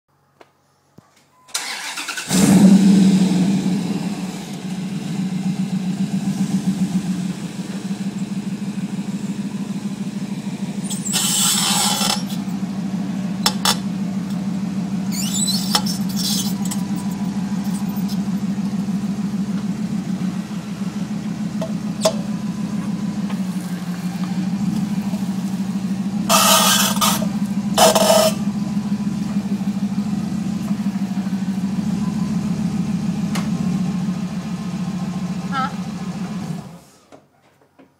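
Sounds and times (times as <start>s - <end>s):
truck engine starting and idling: 1.4s - 37.1s
wheels squeaking: 10.8s - 12.6s, 15.0s - 18.5s, 21.9s - 28.5s.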